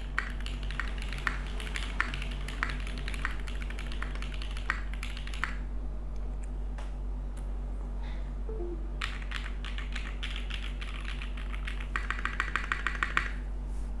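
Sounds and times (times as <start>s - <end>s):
mechanical keyboard typing: 0.1s - 5.6s, 9.0s - 13.3s.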